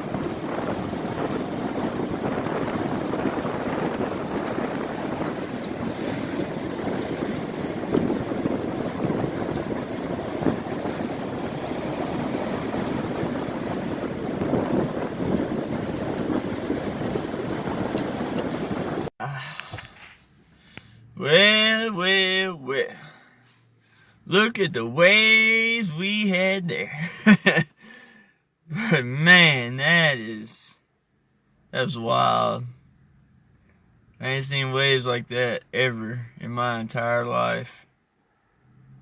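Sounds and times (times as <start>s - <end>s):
surf pounding ashore: 0.0s - 19.1s
wind buffeting microphone: 0.0s - 19.1s.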